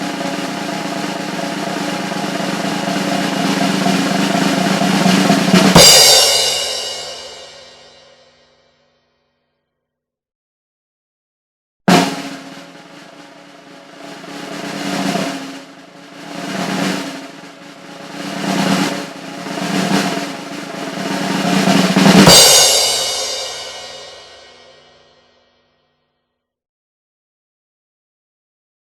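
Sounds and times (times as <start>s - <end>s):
snare drum roll: 0.0s - 8.4s, 11.9s - 25.2s.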